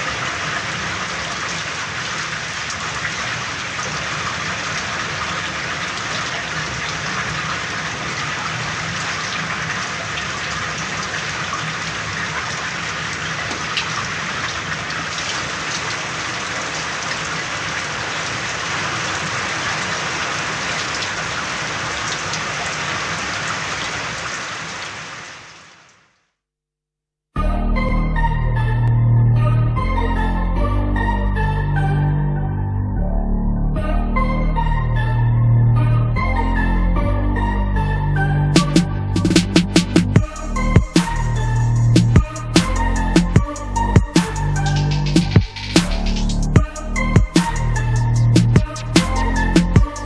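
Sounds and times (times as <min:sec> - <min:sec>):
heavy rain falling: 0:00.0 - 0:26.1.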